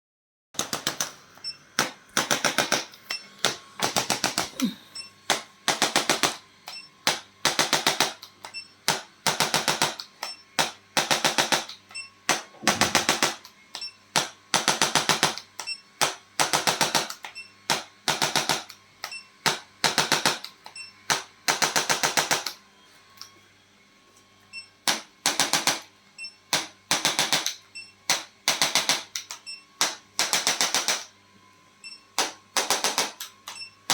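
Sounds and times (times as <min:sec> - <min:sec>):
sharp mechanical clicks: 0:26.5 - 0:31.1, 0:32.2 - 0:33.9.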